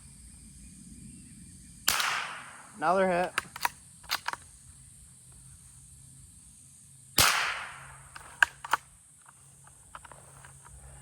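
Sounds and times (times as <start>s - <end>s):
rifle shot with echo: 1.9s - 2.9s, 7.2s - 8.1s
rifle bolt clicks: 3.2s - 4.4s.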